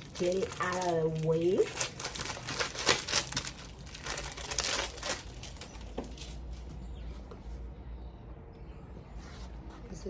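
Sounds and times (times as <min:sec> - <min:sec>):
packaging crinkling and rustling: 0:00.0 - 0:06.7.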